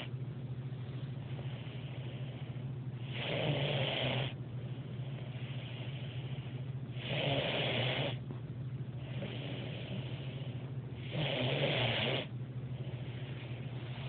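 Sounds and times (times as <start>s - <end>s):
puppy snoring: 1.3s - 8.2s, 9.0s - 14.0s
puppy breathing softly: 4.3s - 7.0s.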